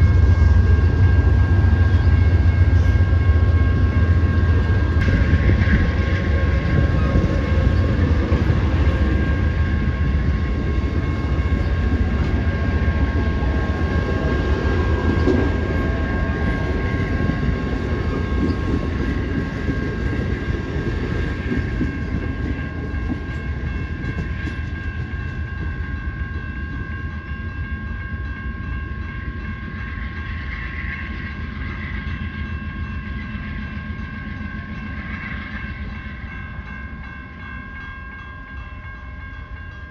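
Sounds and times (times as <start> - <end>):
train rumbling past: 0.0 - 39.9.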